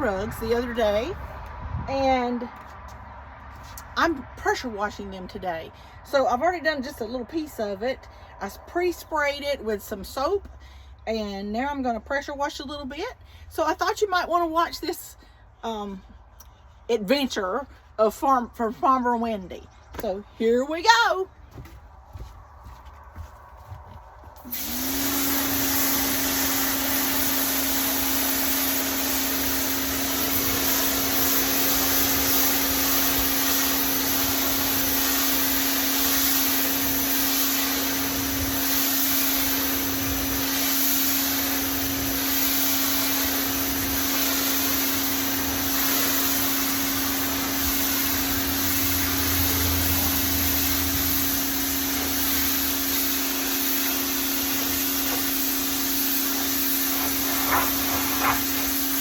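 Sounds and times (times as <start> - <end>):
pressure washer motor: 24.4 - 59.0
water jet hissing: 24.4 - 59.0.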